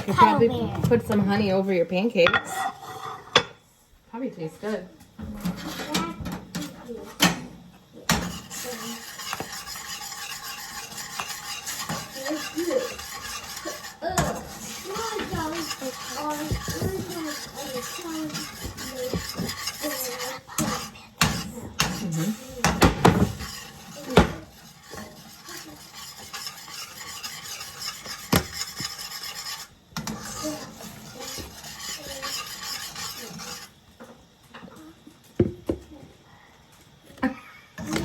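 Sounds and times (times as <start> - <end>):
utensil scraping eggs in pan: 0.0 - 3.6, 4.4 - 34.3
utensil knocking against pan: 8.1 - 22.0, 22.6 - 30.4.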